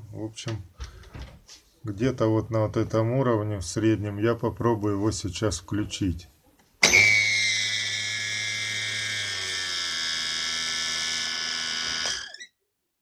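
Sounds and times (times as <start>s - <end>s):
food processor motor whining: 6.8s - 12.5s.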